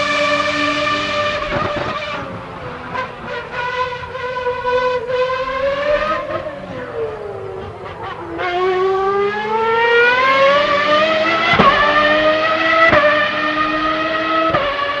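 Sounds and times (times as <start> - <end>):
gear changes: 0.0 - 15.0
race car engine accelerating: 0.0 - 15.0.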